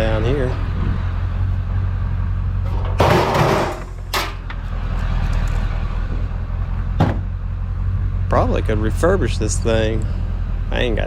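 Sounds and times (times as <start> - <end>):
low engine hum: 0.0 - 11.0
metal grill clattering: 2.7 - 4.4.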